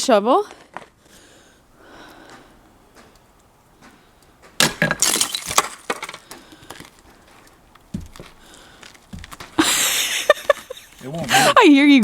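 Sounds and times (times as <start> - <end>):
shovel striking icicles: 4.6 - 6.4
cracks and clinks of breaking ice: 4.6 - 8.2.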